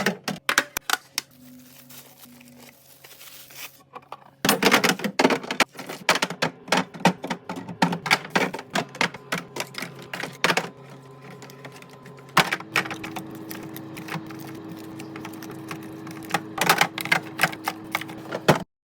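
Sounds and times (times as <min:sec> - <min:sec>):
food containers clicking and clacking: 0:00.0 - 0:01.3, 0:04.0 - 0:18.7
steady low hum: 0:05.5 - 0:18.6.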